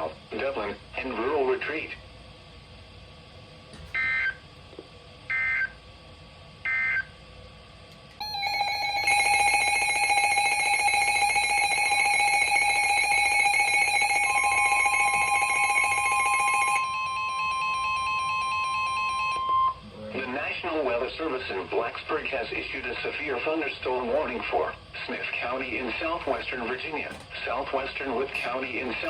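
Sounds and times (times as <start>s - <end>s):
steady single-pitch alarm tone: 3.9s - 4.4s, 8.2s - 19.9s
buzzing electronic alert tone: 8.2s - 19.8s.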